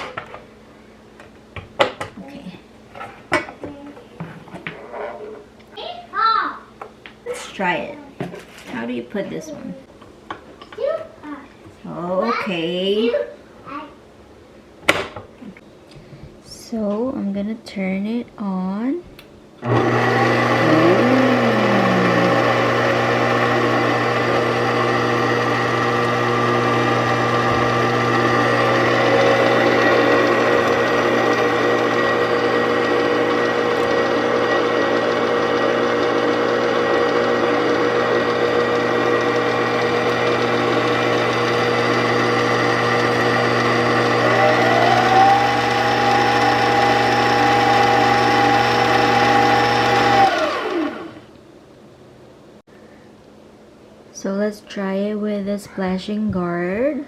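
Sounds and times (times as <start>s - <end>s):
stand mixer motor humming: 19.6s - 51.2s.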